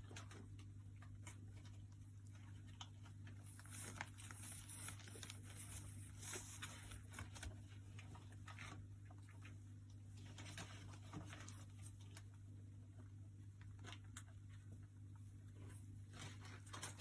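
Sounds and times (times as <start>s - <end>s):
rat scratching and tapping: 0.0s - 8.8s.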